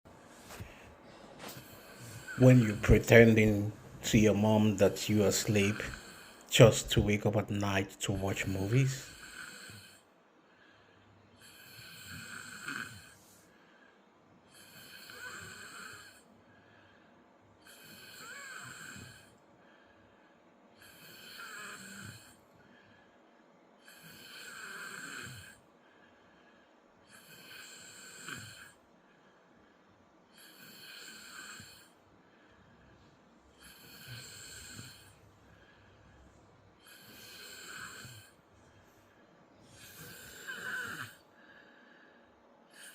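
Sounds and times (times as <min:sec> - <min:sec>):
person snoring: 0:01.4 - 0:10.0, 0:11.4 - 0:13.4, 0:14.5 - 0:16.3, 0:17.6 - 0:19.4, 0:20.8 - 0:22.4, 0:23.8 - 0:25.6, 0:27.1 - 0:28.8, 0:30.4 - 0:32.0, 0:32.7 - 0:38.4, 0:39.6 - 0:42.1, 0:42.7 - 0:42.9.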